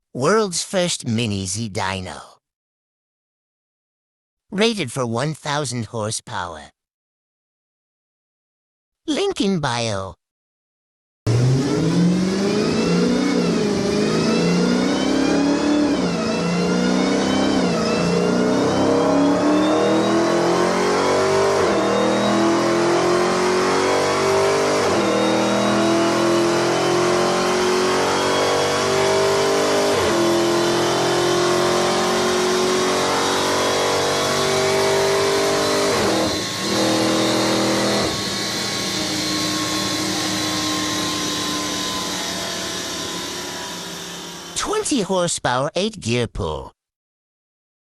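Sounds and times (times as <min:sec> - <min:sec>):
car engine at full throttle: 0:11.3 - 0:44.6.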